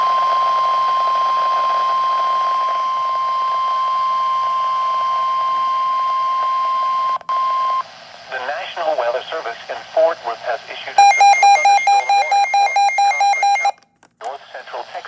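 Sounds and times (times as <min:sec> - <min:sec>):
faint radio hiss: 0:08.1 - 0:11.0
steady alarm tone: 0:11.0 - 0:13.8.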